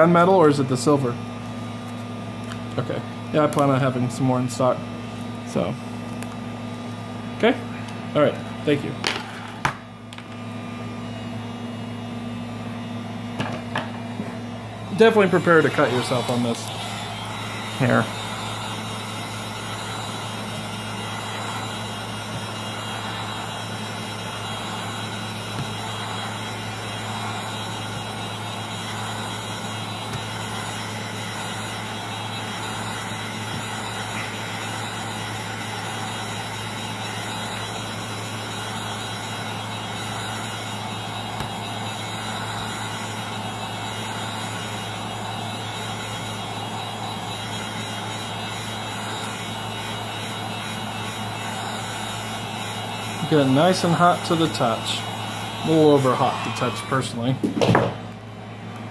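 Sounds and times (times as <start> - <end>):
heat gun blowing: 14.2 - 58.3.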